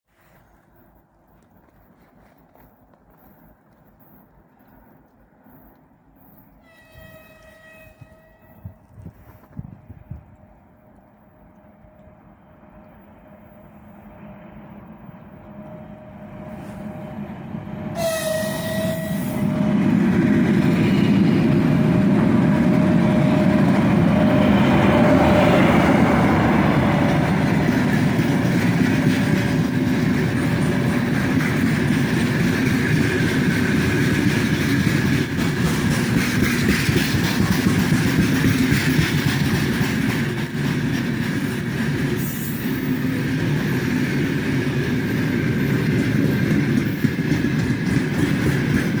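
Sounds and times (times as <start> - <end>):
train rumbling past: 0.1 - 49.0
train horn: 6.6 - 9.0, 15.4 - 19.8
wagon wheels clacking on rails: 18.3 - 49.0.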